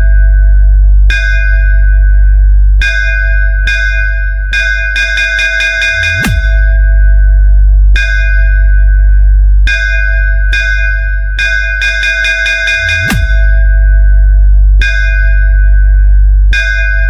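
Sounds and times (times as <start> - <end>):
deep bass: 0.0 - 17.0
ringing bell tone: 9.7 - 16.0.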